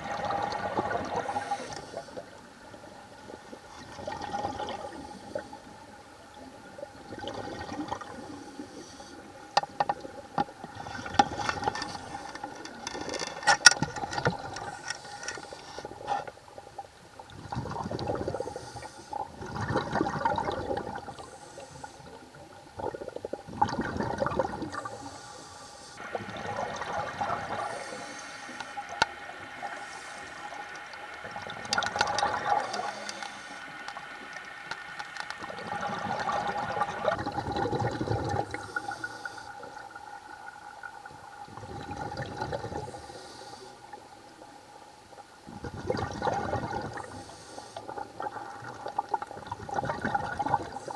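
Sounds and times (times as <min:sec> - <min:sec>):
exhaled bubbles underwater: 0:00.0 - 0:12.8, 0:15.9 - 0:25.2, 0:26.0 - 0:50.9
faint steady tone: 0:00.0 - 0:50.9
diver breathing through regulator: 0:01.1 - 0:02.3, 0:08.0 - 0:09.3, 0:14.4 - 0:16.2, 0:18.1 - 0:19.3, 0:21.0 - 0:22.2, 0:24.6 - 0:26.4, 0:27.2 - 0:31.0, 0:31.7 - 0:34.3, 0:38.1 - 0:39.8, 0:42.5 - 0:44.0, 0:46.8 - 0:48.2
clicks: 0:31.6 - 0:35.4.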